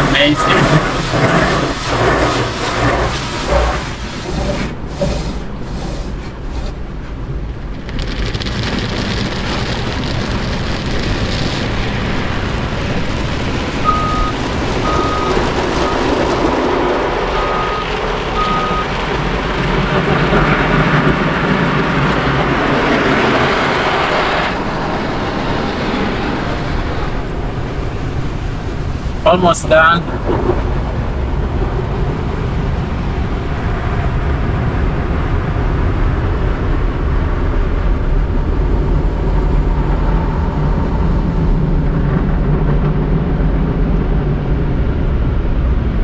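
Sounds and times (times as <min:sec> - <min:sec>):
car wash spray rushing: 0:00.0 - 0:07.3
parking sensor beeps: 0:13.8 - 0:16.2, 0:17.4 - 0:18.9.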